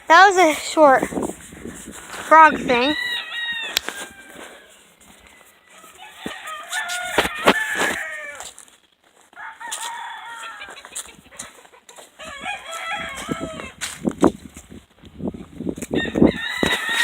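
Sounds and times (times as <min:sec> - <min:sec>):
roosters crowing: 0:02.4 - 0:08.6, 0:09.3 - 0:13.9, 0:15.9 - 0:17.0.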